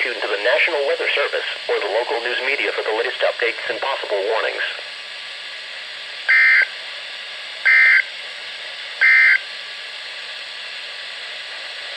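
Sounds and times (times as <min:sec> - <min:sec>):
static hiss: 0:00.0 - 0:07.0
data tone bursts: 0:06.3 - 0:06.7, 0:07.7 - 0:08.1, 0:09.0 - 0:09.4.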